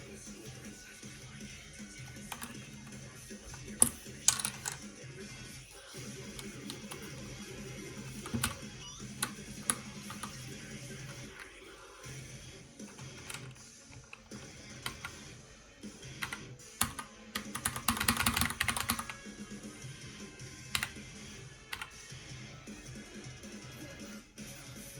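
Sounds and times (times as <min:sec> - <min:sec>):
background music: 0:00.0 - 0:24.9
mechanical keyboard keys clicking: 0:02.3 - 0:04.8, 0:08.0 - 0:10.5, 0:12.8 - 0:15.2, 0:16.2 - 0:19.2, 0:20.7 - 0:21.0.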